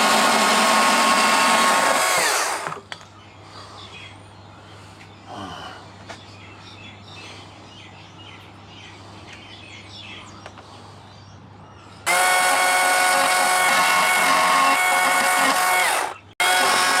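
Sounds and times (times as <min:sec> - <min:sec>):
chainsaw running: 0:00.0 - 0:02.8, 0:12.1 - 0:17.0
birds chirping: 0:02.9 - 0:12.1.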